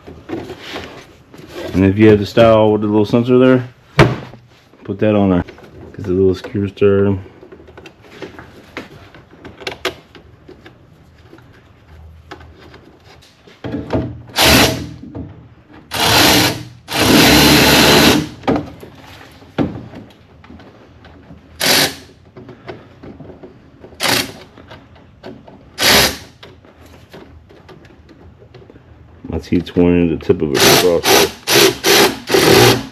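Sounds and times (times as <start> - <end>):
power drill running in bursts: 14.4 - 14.9, 15.9 - 18.3, 21.6 - 22.0, 24.0 - 24.3, 25.8 - 26.3, 30.6 - 32.9.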